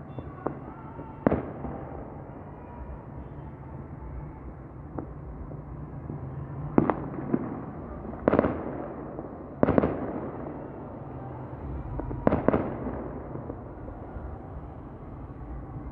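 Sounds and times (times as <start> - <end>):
fireworks bangs: 0.0 - 3.0, 6.6 - 14.4.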